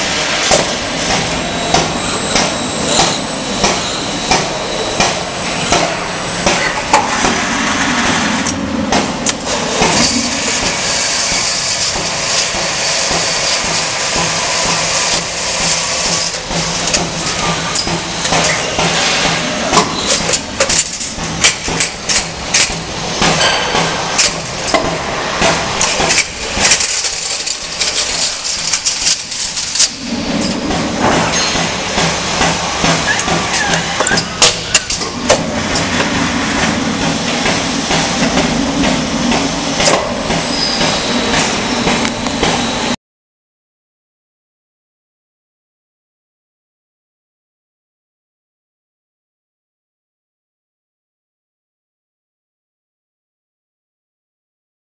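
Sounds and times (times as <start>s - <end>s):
machinery noise: 0.0s - 43.0s
metal clanks and knocks: 15.2s - 36.7s.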